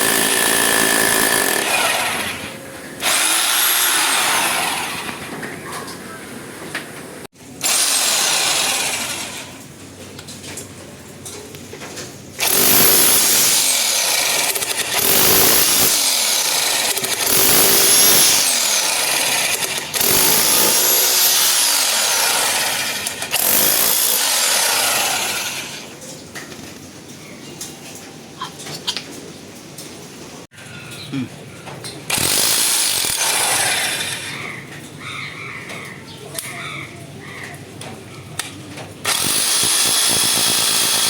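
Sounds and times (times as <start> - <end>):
electric rotary hammer running: 0.0 - 5.4, 7.6 - 9.6, 12.4 - 25.9, 32.1 - 34.3, 39.1 - 41.0.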